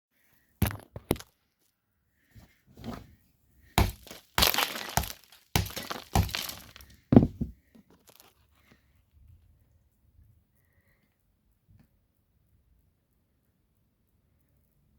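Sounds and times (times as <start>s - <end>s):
coal cracking under drill bit: 3.8s - 7.0s.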